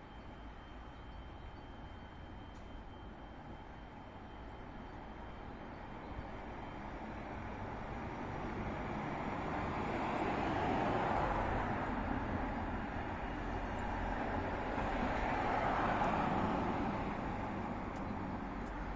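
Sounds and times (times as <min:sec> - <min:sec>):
vehicles passing by: 0:06.8 - 0:18.9.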